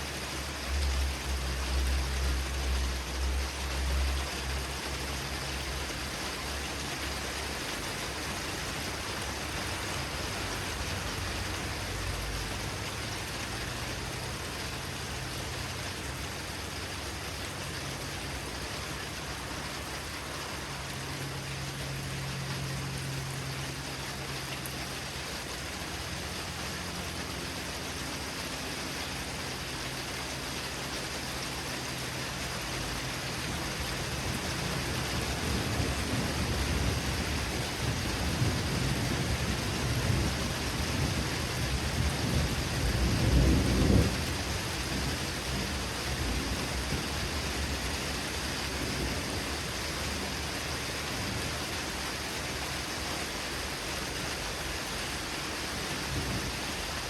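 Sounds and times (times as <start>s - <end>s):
heavy rain: 0.0s - 57.0s
rolling thunder: 34.6s - 47.9s.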